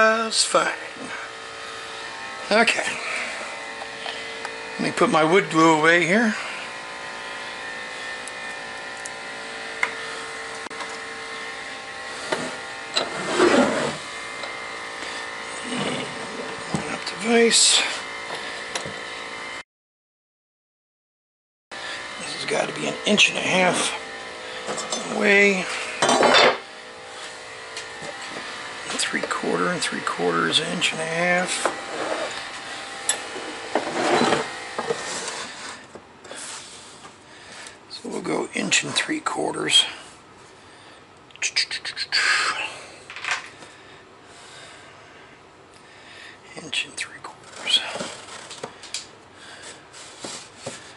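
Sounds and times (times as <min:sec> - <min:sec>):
electrical motor hum: 0:00.0 - 0:19.6, 0:21.7 - 0:50.9
scrape on workbench: 0:12.2 - 0:14.0, 0:31.6 - 0:37.1, 0:49.6 - 0:50.9
objects clattering being set down: 0:26.0 - 0:26.6, 0:43.1 - 0:43.6.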